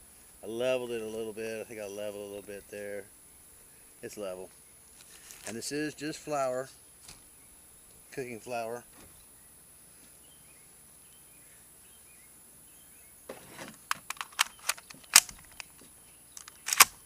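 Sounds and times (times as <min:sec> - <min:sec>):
gear clicks and knocks: 0:13.3 - 0:17.0.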